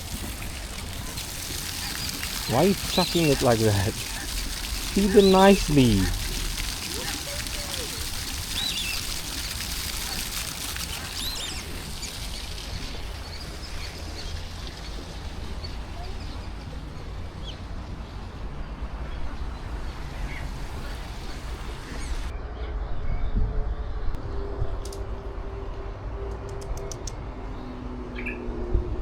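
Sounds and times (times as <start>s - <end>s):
birds chirping: 0.0s - 15.0s.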